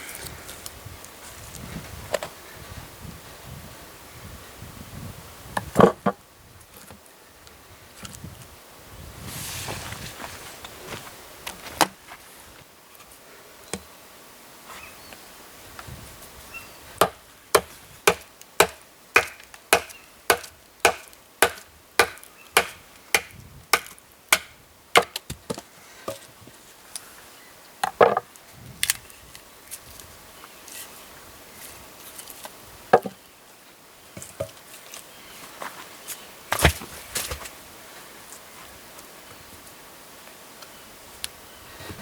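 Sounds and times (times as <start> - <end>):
wood being chopped: 17.0 - 26.2, 36.5 - 37.4.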